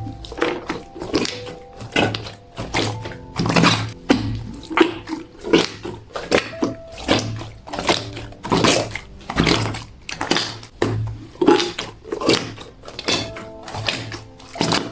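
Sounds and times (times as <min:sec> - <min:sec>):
slime squishing and popping: 0:00.0 - 0:14.9.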